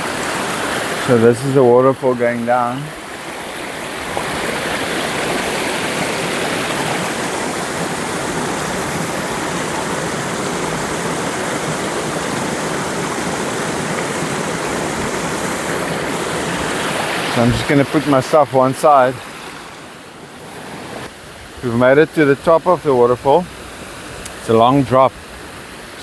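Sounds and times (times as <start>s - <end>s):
waterfall roaring: 0.0s - 26.0s.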